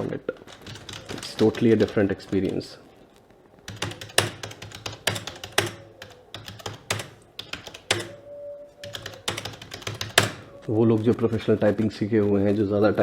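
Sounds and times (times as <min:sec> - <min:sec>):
keyboard keys clacking: 0:00.0 - 0:02.7, 0:03.7 - 0:13.0.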